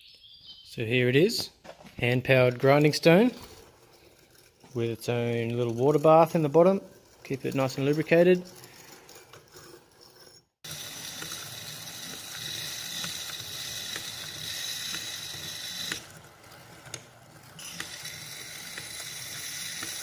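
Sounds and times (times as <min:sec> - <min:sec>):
crank rattling: 0:02.3 - 0:20.0
grinding stone swishing in water: 0:02.6 - 0:15.8.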